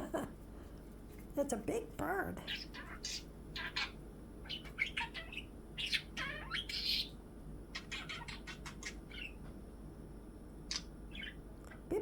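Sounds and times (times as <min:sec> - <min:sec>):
budgerigar chattering: 0:02.5 - 0:07.1, 0:07.8 - 0:09.4, 0:10.7 - 0:11.4.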